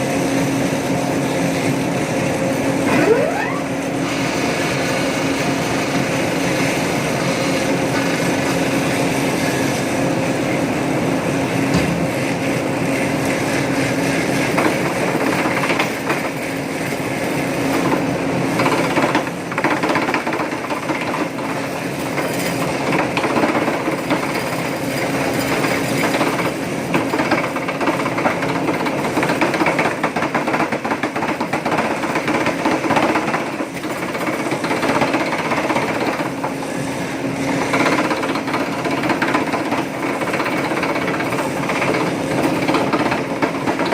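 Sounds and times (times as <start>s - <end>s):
machine rattling and clattering: 13.8s - 36.6s, 37.4s - 43.9s.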